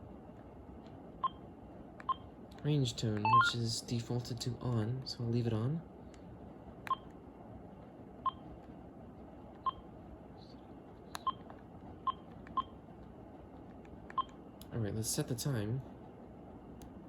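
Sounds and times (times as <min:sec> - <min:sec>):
phone keypad beeps: 0:03.2 - 0:03.6.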